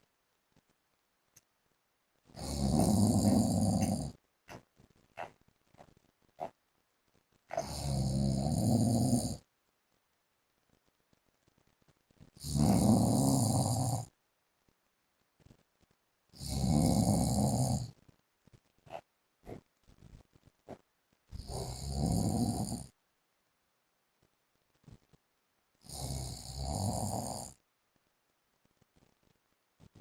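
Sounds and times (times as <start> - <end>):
man snoring: 2.3 - 4.2, 7.5 - 9.4, 12.4 - 14.1, 16.4 - 18.0, 21.3 - 22.9, 25.8 - 27.6
faint snuffling: 2.3 - 6.6, 7.5 - 9.5, 12.2 - 14.1, 16.4 - 18.0, 18.8 - 23.0.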